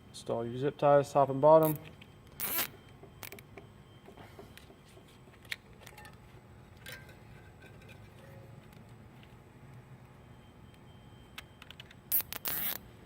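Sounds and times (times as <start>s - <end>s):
zip tie rasping: 2.4s - 2.7s, 12.1s - 12.8s.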